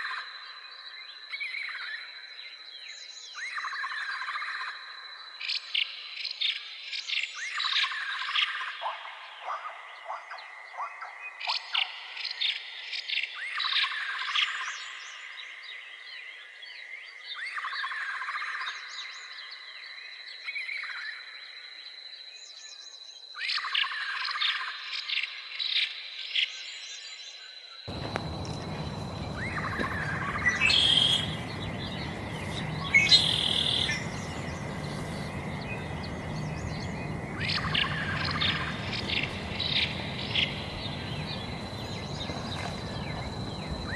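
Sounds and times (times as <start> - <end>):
chirping animal calls: 27.9 - 43.9
high-pitched whine: 27.9 - 43.9.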